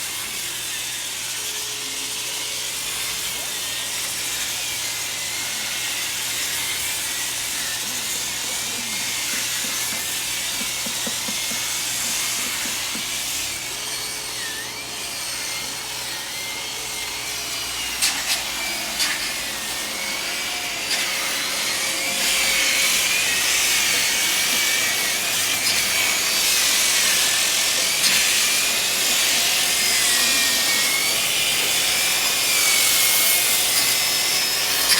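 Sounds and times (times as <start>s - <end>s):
power sander on wood: 0.0s - 34.9s.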